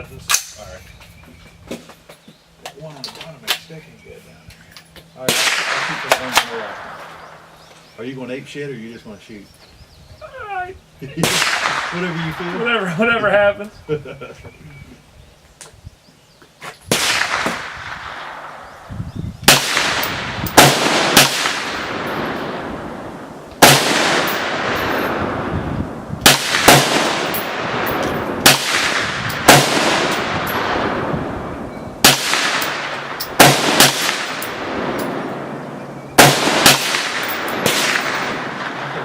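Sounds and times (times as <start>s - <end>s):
gunshots echoing: 5.2s - 7.6s, 11.2s - 13.0s, 16.9s - 18.7s, 19.5s - 25.5s, 26.2s - 39.0s.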